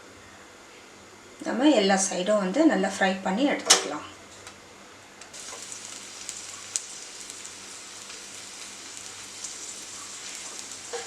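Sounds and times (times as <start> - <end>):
oil sizzling in a pan: 5.3 - 11.0.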